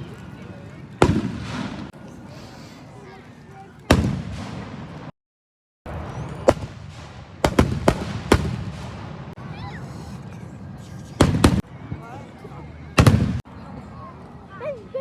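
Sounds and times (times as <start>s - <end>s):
fireworks bangs: 1.0s - 2.0s, 3.8s - 5.1s, 5.9s - 9.8s, 11.0s - 11.7s, 13.0s - 13.4s.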